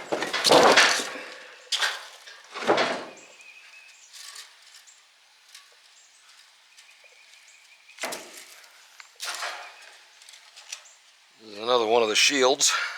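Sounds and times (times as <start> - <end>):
metal parts scraping clatter: 0.0 - 3.3, 4.1 - 7.0, 8.0 - 10.9.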